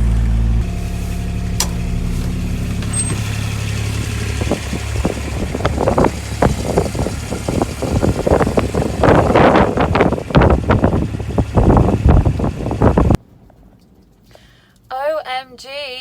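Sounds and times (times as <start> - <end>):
vehicle engine idling: 0.0 - 13.2.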